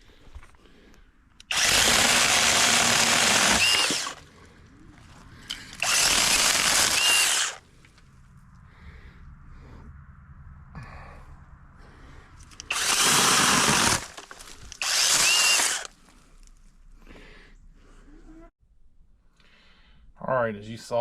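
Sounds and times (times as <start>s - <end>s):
mini chainsaw cutting branches: 1.4s - 4.2s, 5.7s - 7.6s, 12.6s - 16.0s.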